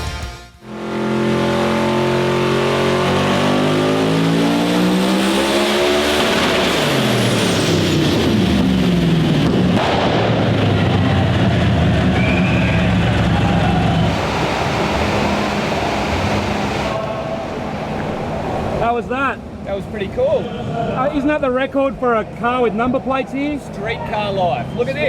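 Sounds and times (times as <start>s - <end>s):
turbocharged engine under load: 0.6s - 20.2s.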